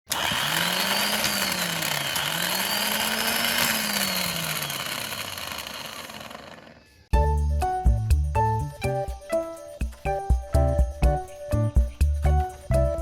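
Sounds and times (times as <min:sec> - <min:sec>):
electric motor whirring: 0:00.1 - 0:07.1.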